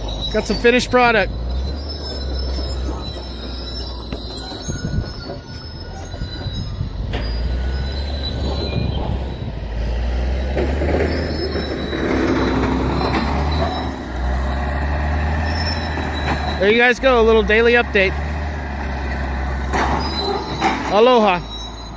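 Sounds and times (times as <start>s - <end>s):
diesel engine low drone: 0.0s - 21.9s
metallic squealing tracks: 0.0s - 21.9s.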